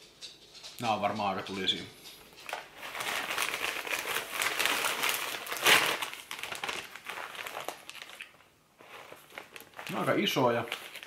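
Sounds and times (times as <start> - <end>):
chip bag crinkling: 2.3 - 11.0.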